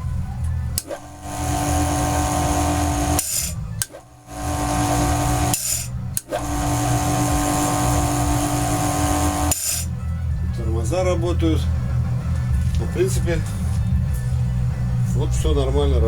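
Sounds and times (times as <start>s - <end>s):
electric lawnmower motor whining: 0.0s - 10.1s.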